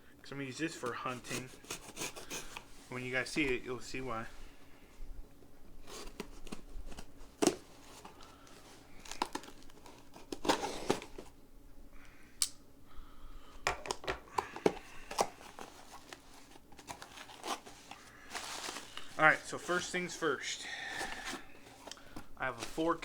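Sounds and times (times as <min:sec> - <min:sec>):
packaging crinkling and rustling: 0:00.7 - 0:04.3, 0:05.8 - 0:11.4, 0:13.8 - 0:23.0.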